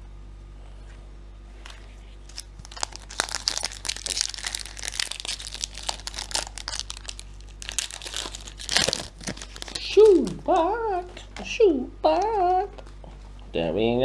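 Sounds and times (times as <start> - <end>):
card pack wrapper crinkling: 2.2 - 11.3.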